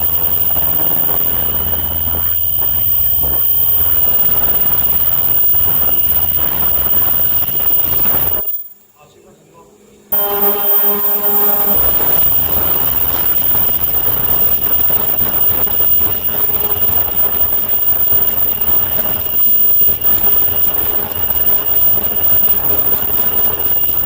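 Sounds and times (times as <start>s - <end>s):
machine rapid ticking clatter: 0.0s - 8.7s, 10.1s - 24.0s
machine high-pitched whine: 0.0s - 8.8s, 10.1s - 24.0s.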